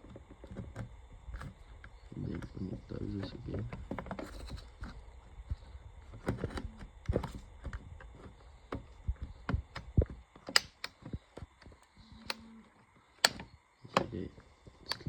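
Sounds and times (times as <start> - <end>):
door lock clicking: 10.5 - 11.0.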